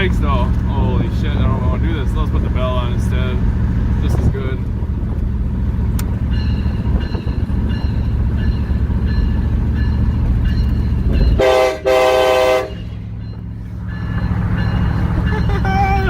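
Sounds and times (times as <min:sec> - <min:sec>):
truck engine running: 0:00.0 - 0:16.0
electronic locomotive bell ringing: 0:06.3 - 0:11.7, 0:12.8 - 0:16.0
train horn blasts: 0:11.4 - 0:13.1.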